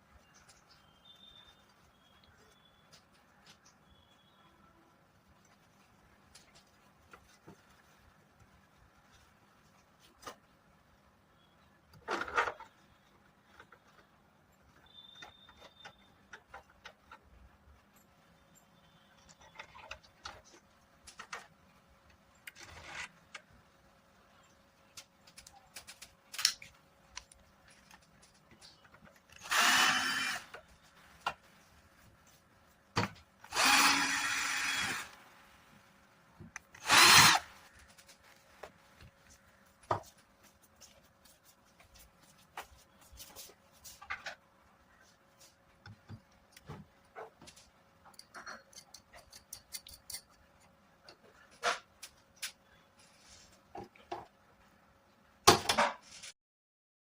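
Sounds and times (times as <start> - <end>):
small power tool whining: 29.4 - 30.6, 33.5 - 35.2, 36.8 - 37.6
parts clicking and tapping: 47.5 - 52.6.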